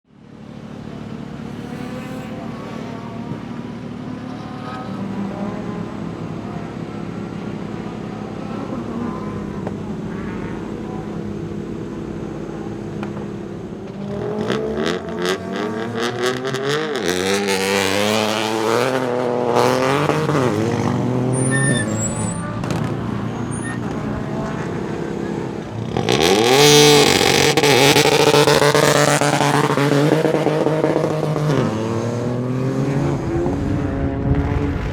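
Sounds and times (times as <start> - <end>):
car engine idling and revving: 0.1 - 34.9
exhaust crackles and pops: 12.8 - 17.2, 22.5 - 23.2, 33.5 - 34.9.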